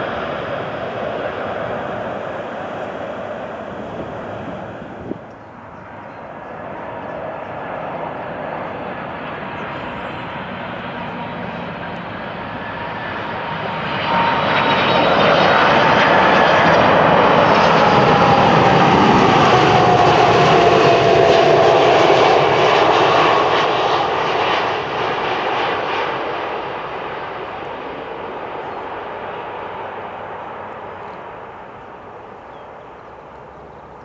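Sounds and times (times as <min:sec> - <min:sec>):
falling engine whine: 0:00.0 - 0:06.0
jet airliner passing overhead: 0:00.0 - 0:34.0.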